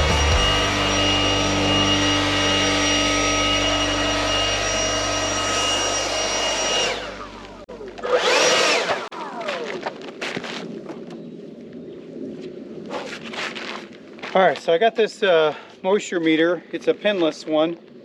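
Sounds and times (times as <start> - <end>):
blower whining: 0.0 - 9.9.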